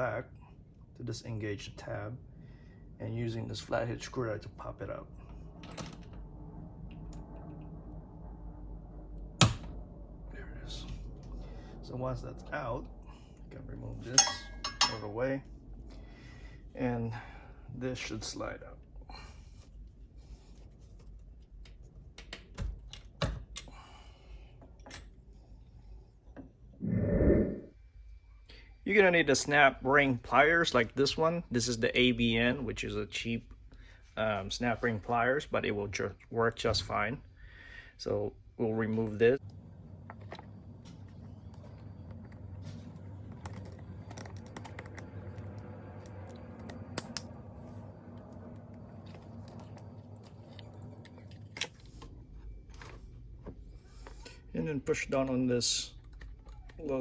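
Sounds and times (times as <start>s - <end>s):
steady low hum: 0.0s - 57.0s.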